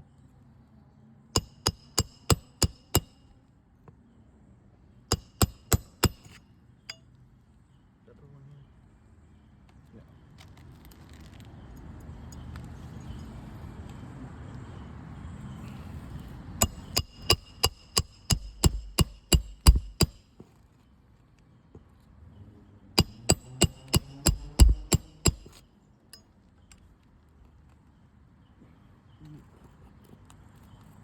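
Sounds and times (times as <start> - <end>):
hammer driving nails into roof: 1.4 - 3.2, 5.1 - 6.4, 16.6 - 20.3, 23.0 - 25.6.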